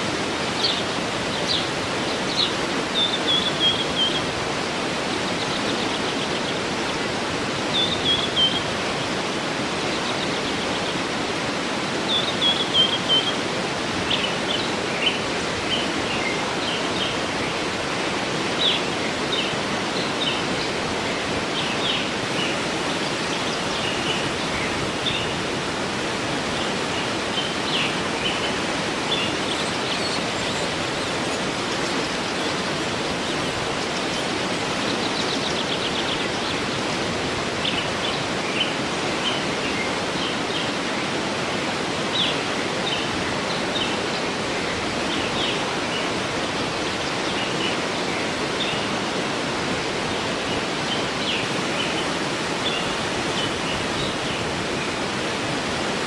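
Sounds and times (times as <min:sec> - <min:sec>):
small birds chirping: 0:00.0 - 0:07.1, 0:07.7 - 0:08.8, 0:26.6 - 0:37.0
waterfall running: 0:00.0 - 0:56.0.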